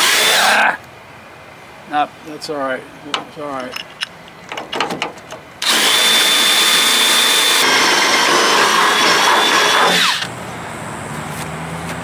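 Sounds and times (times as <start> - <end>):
electric drill boring wood: 0.0 - 0.5, 5.6 - 10.3.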